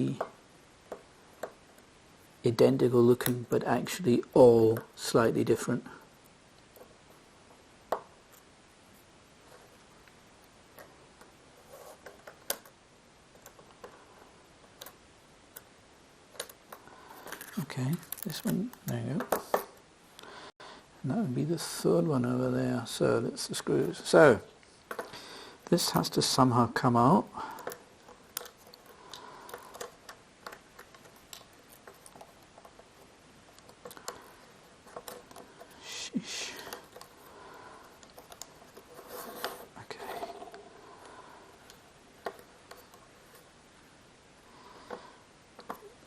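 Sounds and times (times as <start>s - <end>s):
small tools clicking on plastic: 27.5s - 35.8s.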